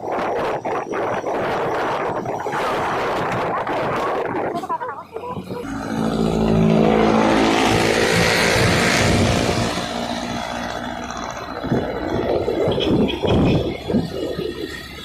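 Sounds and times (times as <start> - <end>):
vehicle engine running: 5.1 - 15.0.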